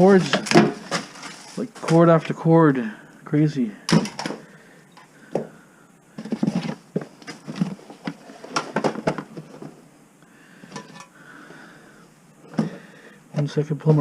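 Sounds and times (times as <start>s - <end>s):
household clutter clattering: 0.0s - 2.1s, 3.9s - 4.4s, 6.2s - 9.8s, 10.7s - 11.1s.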